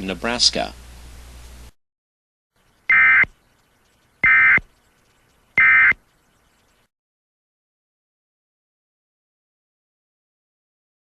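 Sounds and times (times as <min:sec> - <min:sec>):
short digital buzzes: 0:02.9 - 0:03.3, 0:04.2 - 0:04.7, 0:05.6 - 0:06.0.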